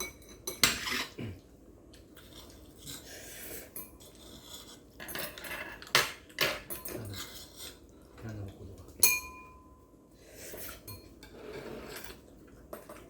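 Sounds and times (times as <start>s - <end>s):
utensils clinking on dishes: 0.0s - 1.2s, 2.8s - 7.8s, 8.9s - 9.8s, 10.6s - 13.0s.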